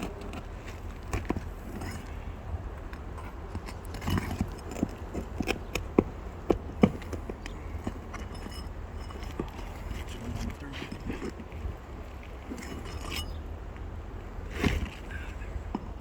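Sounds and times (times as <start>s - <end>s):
steady low rumble: 0.0s - 16.0s
knocks prying roof shingles: 3.4s - 8.4s.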